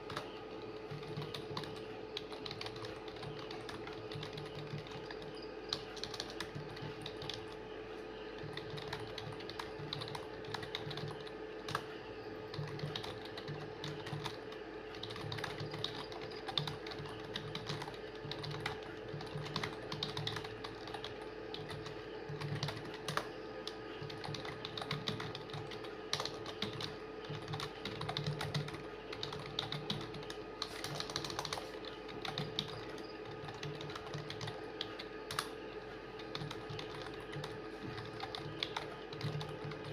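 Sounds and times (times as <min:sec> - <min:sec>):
rapid keyboard typing: 0:00.0 - 0:39.9.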